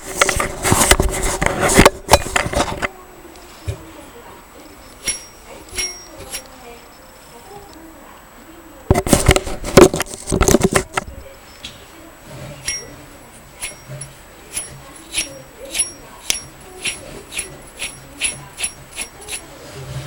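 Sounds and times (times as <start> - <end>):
rhythmic bearing tick with ring: 5.0 - 6.6, 12.6 - 19.5.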